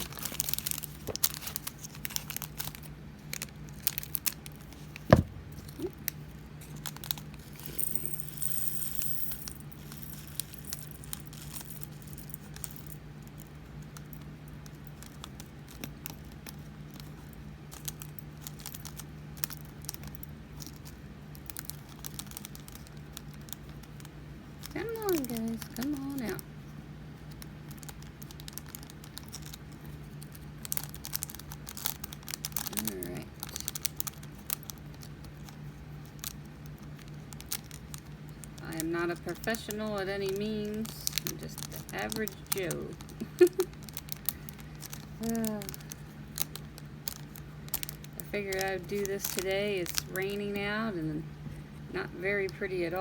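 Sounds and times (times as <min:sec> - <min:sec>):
tiny beads clicking and rattling: 0:00.0 - 0:04.8, 0:05.6 - 0:26.4, 0:27.3 - 0:50.9
plastic bag crinkling: 0:00.0 - 0:12.9, 0:24.6 - 0:26.4, 0:27.3 - 0:51.0
steady low hum: 0:00.0 - 0:53.0.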